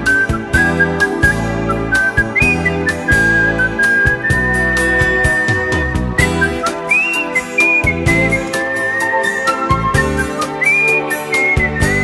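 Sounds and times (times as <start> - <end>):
whistle-like melody: 0.0 - 12.0
steady beat: 0.3 - 6.9.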